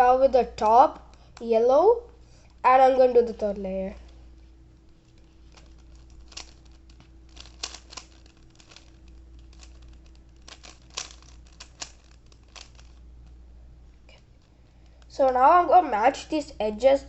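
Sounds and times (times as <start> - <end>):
puzzle cube plastic clicks: 4.8 - 13.4.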